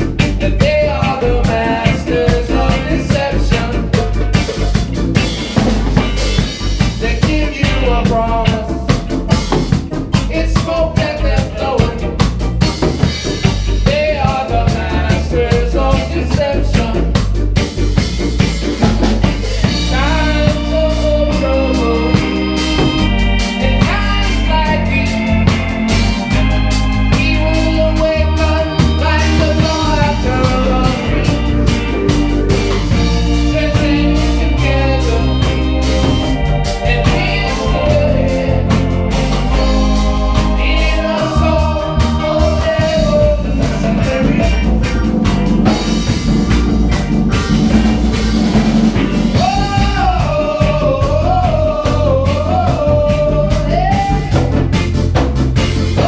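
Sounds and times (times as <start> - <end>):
reggae funk band playing: 0.0 - 56.0
wavering melody line: 19.0 - 52.4.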